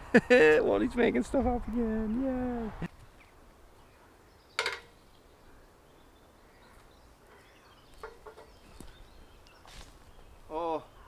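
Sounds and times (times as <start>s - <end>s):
faint outdoor background: 0.0s - 11.0s.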